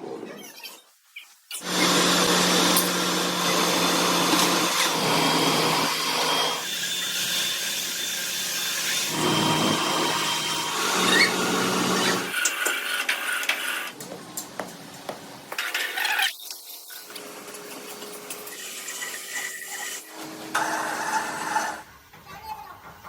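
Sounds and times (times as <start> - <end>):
power tool running: 1.6 - 12.4.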